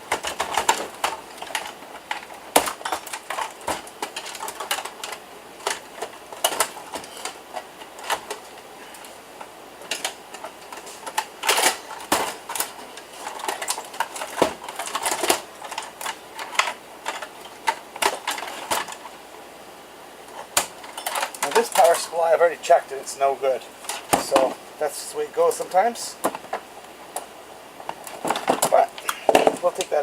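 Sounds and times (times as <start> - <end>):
computer parts clicking and clacking: 0.0 - 19.1, 20.3 - 22.3.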